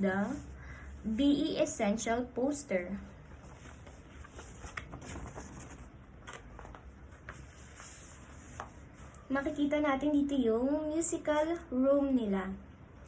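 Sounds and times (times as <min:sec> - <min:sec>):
paper poster rustling: 0:02.9 - 0:09.8.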